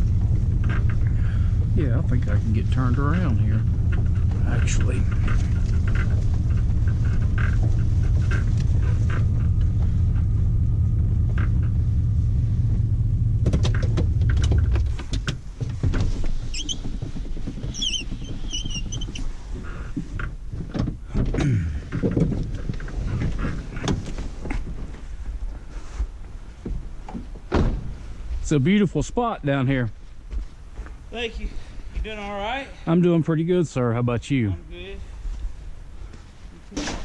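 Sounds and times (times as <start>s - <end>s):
truck engine rumbling: 0.0s - 37.0s
clicks and knocks: 13.4s - 24.6s.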